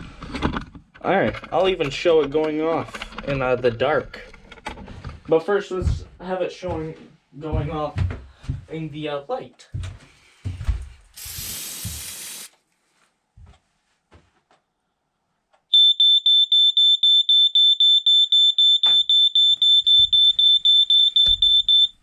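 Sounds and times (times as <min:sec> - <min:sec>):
hiss: 0:11.2 - 0:12.5
smoke alarm beeping: 0:11.2 - 0:12.5, 0:15.7 - 0:22.0.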